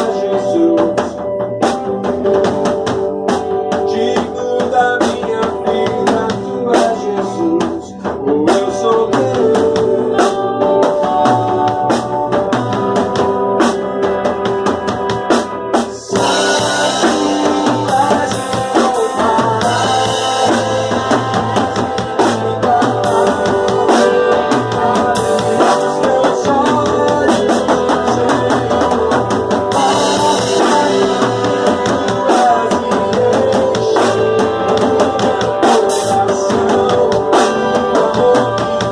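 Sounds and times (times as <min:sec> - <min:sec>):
live band playing: 0:00.0 - 0:38.9.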